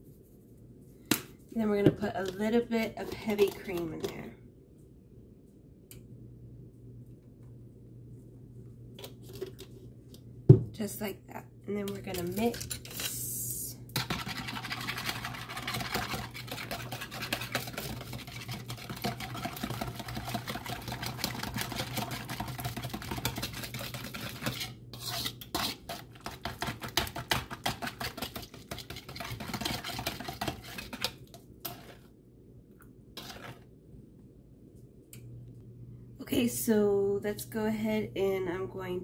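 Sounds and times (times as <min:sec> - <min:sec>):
utensil beating batter in bowl: 0:01.6 - 0:04.2, 0:13.9 - 0:32.1, 0:33.2 - 0:33.7.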